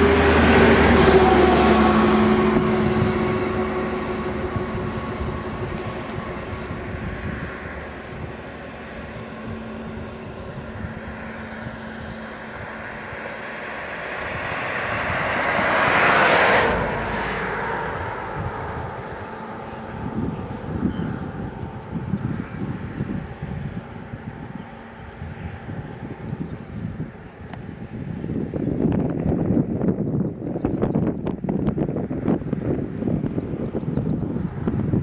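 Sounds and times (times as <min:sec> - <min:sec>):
passing vehicle engine and tyres: 0:00.0 - 0:35.0.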